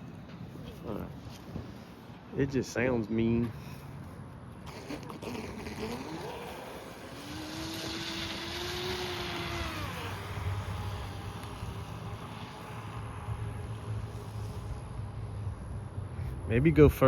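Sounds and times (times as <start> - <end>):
rc boat motor whining: 4.7 - 15.1.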